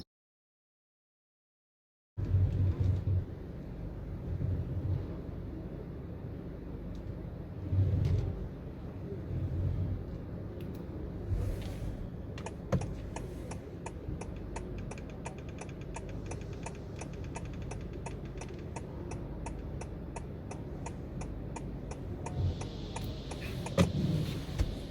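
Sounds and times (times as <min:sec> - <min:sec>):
low car hum: 0:02.2 - 0:24.9
steering column clicking: 0:11.6 - 0:24.9.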